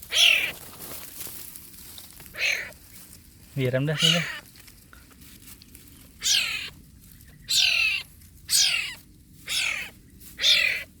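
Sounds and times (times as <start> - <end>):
kitten mewing: 0.1 - 0.5, 6.2 - 6.7, 7.5 - 10.9.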